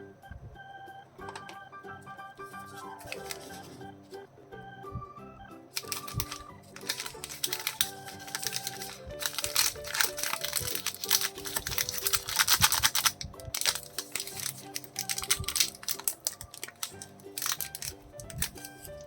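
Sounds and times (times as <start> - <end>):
background music: 0.0 - 19.0
plastic wrapper crinkling: 2.5 - 3.8, 5.7 - 19.0.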